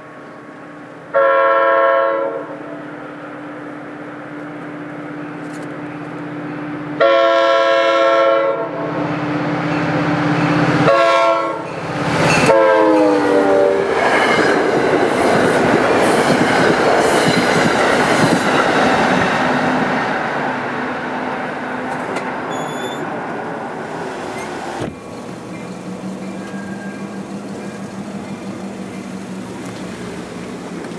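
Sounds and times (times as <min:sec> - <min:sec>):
train rumble and wheel clatter: 0:00.0 - 0:30.9
locomotive air horn blasts: 0:01.1 - 0:02.8, 0:07.0 - 0:09.0, 0:10.8 - 0:11.7, 0:12.4 - 0:13.9.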